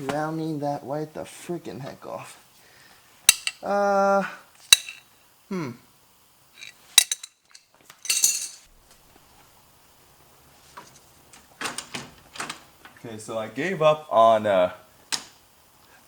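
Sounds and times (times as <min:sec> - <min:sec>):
metal tools clinking: 0:03.3 - 0:03.6, 0:04.7 - 0:05.1, 0:06.6 - 0:08.7
wrench rattling: 0:03.3 - 0:03.6, 0:04.7 - 0:05.0, 0:06.6 - 0:08.7.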